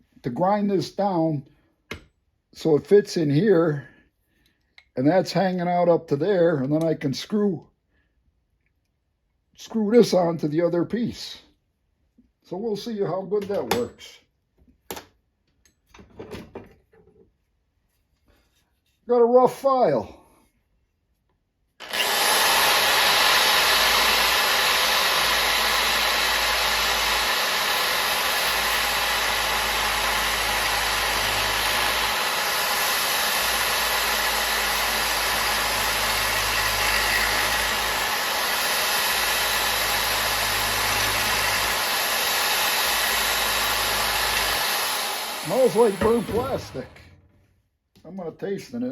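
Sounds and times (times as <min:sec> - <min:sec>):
file grinding plastic: 0:21.8 - 0:47.1
electric drill running: 0:21.8 - 0:47.2.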